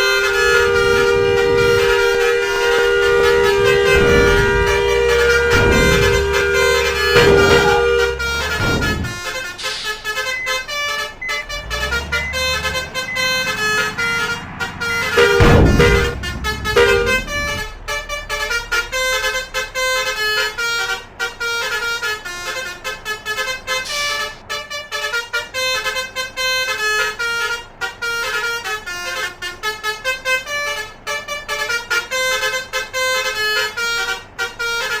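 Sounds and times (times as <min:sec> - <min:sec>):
musical trumpet horns melody: 0:00.0 - 0:35.0
brief air hiss: 0:09.3 - 0:10.4, 0:23.9 - 0:24.4.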